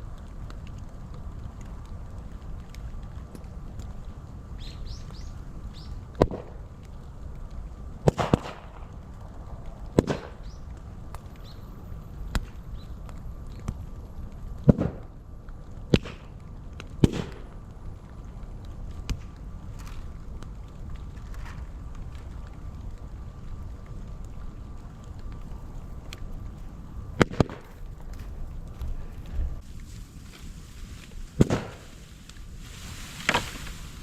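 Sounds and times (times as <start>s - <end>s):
fire burning: 0.0s - 34.0s
bamboo bursting with sharp bangs: 6.1s - 6.6s, 8.0s - 9.0s, 9.9s - 10.7s, 14.6s - 15.1s, 15.9s - 17.5s, 27.1s - 28.2s, 29.6s - 34.0s.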